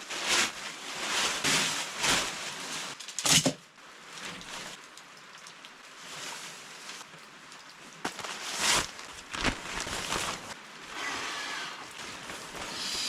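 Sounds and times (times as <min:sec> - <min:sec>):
rain pattering: 0:03.8 - 0:10.9, 0:11.8 - 0:12.7.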